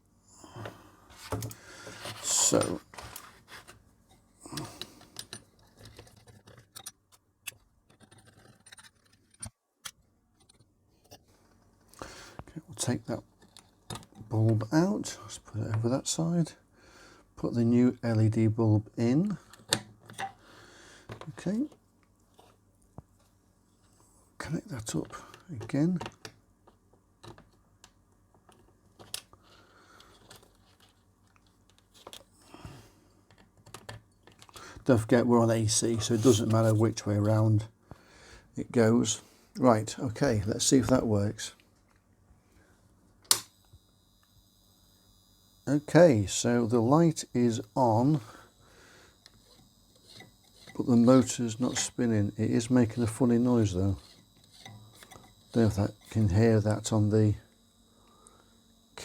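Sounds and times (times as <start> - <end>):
small parts clicking and rattling: 4.6 - 12.5, 24.8 - 32.4, 33.2 - 34.8, 53.9 - 56.2.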